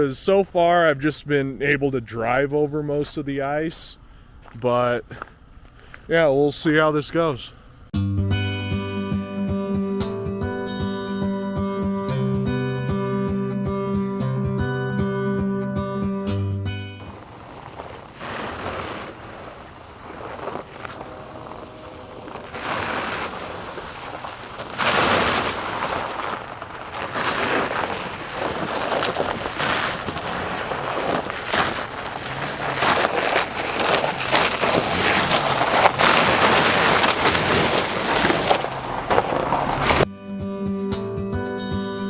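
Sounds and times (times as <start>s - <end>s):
faint engine: 19.2s - 23.7s.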